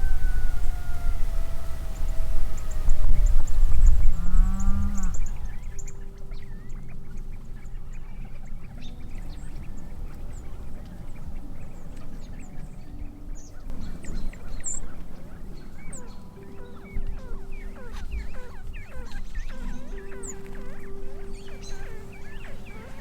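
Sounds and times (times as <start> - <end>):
low drawn-out animal call: 0.0 - 6.7
birds chirping and calling: 0.0 - 23.0
steady low rumble: 0.0 - 23.0.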